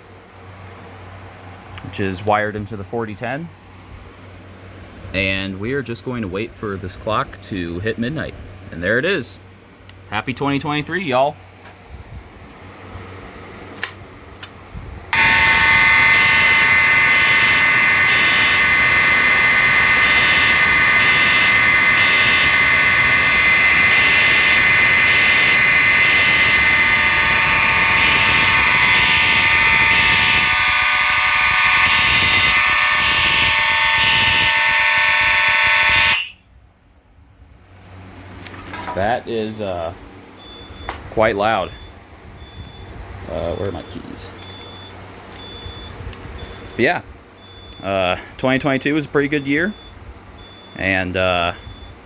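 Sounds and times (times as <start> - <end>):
fire alarm tones: 15.2 - 36.4, 40.4 - 52.0.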